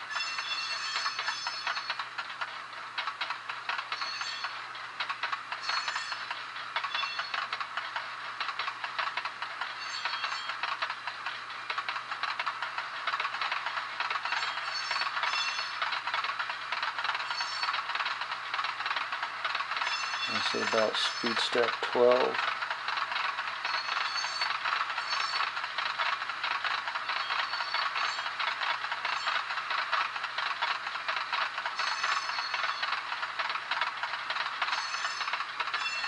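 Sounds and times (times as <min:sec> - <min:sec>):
railcar wheels rattling: 0:00.0 - 0:36.0
short high squeals: 0:23.7 - 0:25.4.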